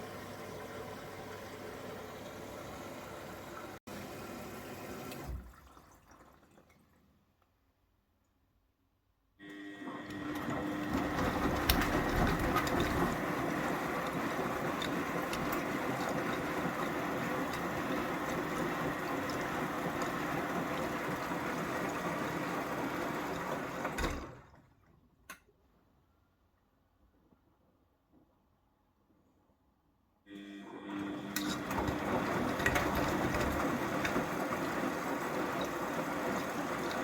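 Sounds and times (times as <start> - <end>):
washing machine running: 0.0 - 6.9, 9.4 - 25.0, 30.3 - 37.0.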